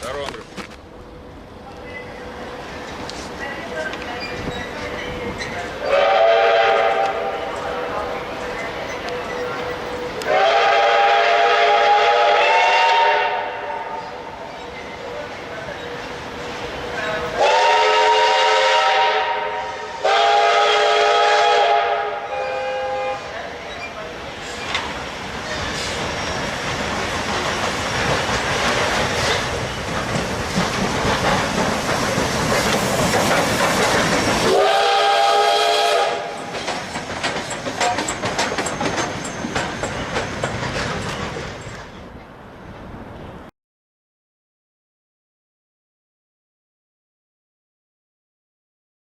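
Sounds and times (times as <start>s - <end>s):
steam locomotive whistle: 5.8s - 7.4s, 9.3s - 14.2s, 17.3s - 23.4s, 34.4s - 36.5s
train wheels clattering over rail joints: 23.6s - 34.6s, 36.3s - 42.3s.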